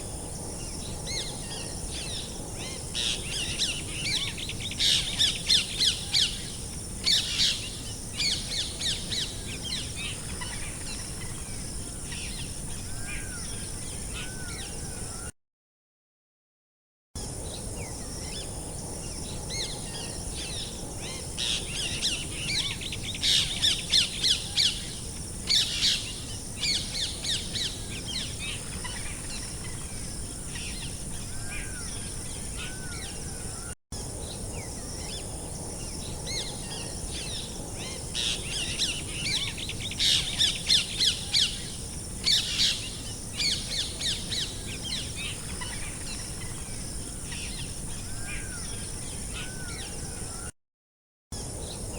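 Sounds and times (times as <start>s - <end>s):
steady outdoor hiss: 0.0s - 15.3s, 17.2s - 50.5s, 51.4s - 51.9s
songbirds chirping: 17.3s - 50.5s.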